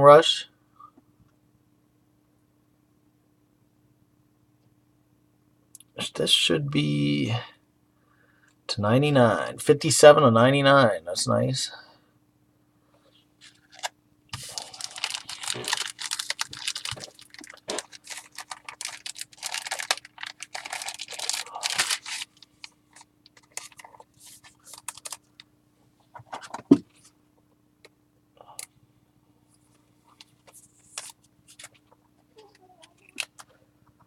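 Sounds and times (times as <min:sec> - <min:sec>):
cards and packaging rustling: 0:13.4 - 0:25.4, 0:30.2 - 0:33.5.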